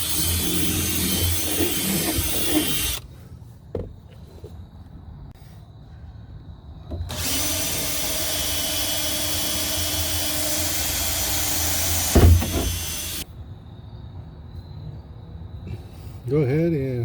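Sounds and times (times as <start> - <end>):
power drill running: 0.0 - 3.0, 7.1 - 13.2.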